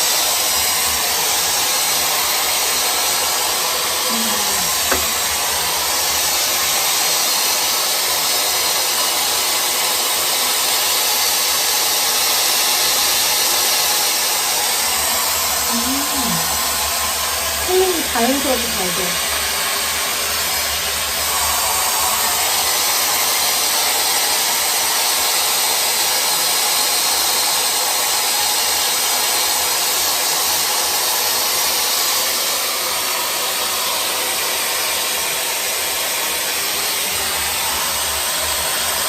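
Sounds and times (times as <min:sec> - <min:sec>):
hot-air styler blowing: 0:00.0 - 0:39.0.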